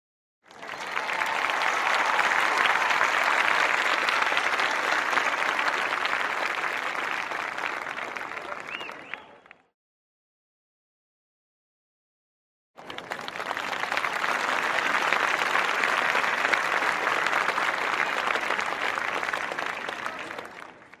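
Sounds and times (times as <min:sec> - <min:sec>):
crowd applause: 0:00.5 - 0:09.6, 0:12.8 - 0:21.0
short whistle: 0:08.7 - 0:09.5.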